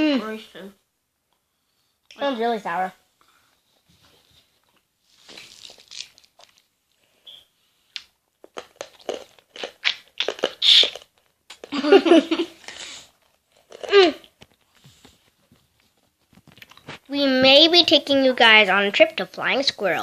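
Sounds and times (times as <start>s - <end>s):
hard candy crunching: 5.3s - 6.7s, 8.0s - 11.8s, 12.7s - 14.6s
child giggling: 11.7s - 12.7s.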